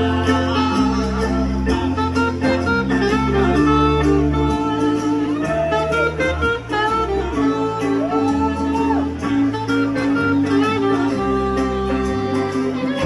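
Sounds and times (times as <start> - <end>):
guitar: 0.0 - 13.0
sliding guitar note: 0.0 - 13.0
steady bass line: 0.0 - 13.0.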